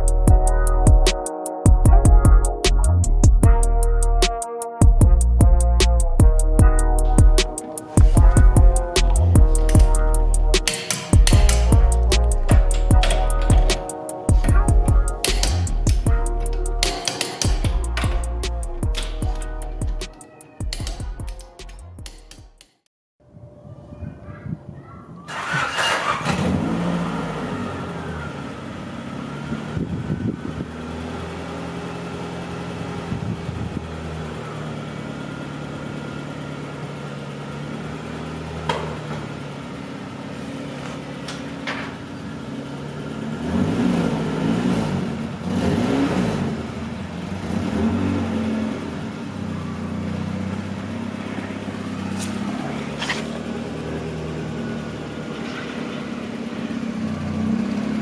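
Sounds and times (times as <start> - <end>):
sharp clicks: 10.6 - 14.0, 15.1 - 19.4
car engine running and revving: 26.2 - 58.0.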